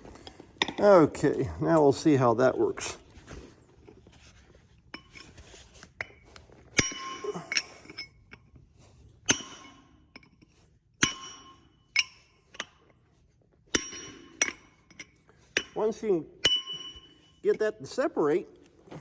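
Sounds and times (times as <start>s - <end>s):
hammer on chisel against steel: 11.0s - 12.1s, 13.8s - 14.6s, 16.4s - 17.2s.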